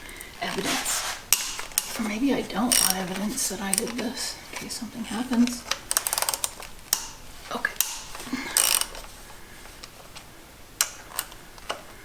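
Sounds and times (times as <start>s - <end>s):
short metal scrape: 0.6s - 1.7s
socket ratchet clicking: 1.3s - 2.0s, 2.7s - 3.1s, 5.6s - 9.1s.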